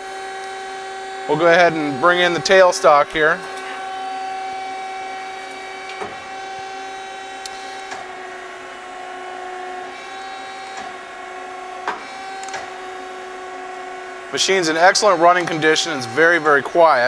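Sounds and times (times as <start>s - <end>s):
lathe humming: 0.0s - 17.0s
sharp clicks: 11.9s - 12.7s.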